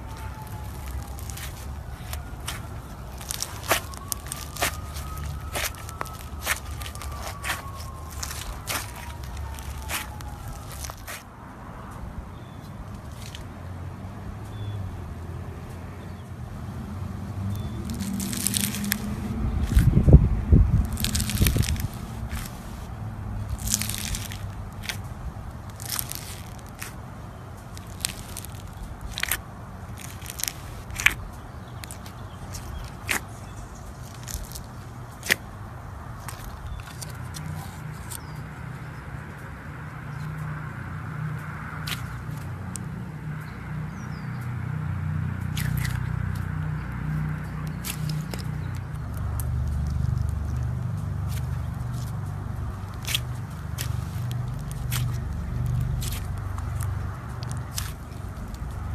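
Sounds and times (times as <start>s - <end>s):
slime crackling and clicking: 0.0s - 11.3s, 17.5s - 20.2s, 20.8s - 22.9s, 23.5s - 27.0s, 27.6s - 35.5s, 36.2s - 38.3s, 41.8s - 42.9s, 45.5s - 46.5s, 47.4s - 58.9s
steady low rumble: 0.0s - 15.1s, 16.2s - 39.5s, 45.4s - 58.9s
slime crackling pops: 0.1s - 11.2s, 23.5s - 25.1s, 25.7s - 27.0s, 27.8s - 29.4s.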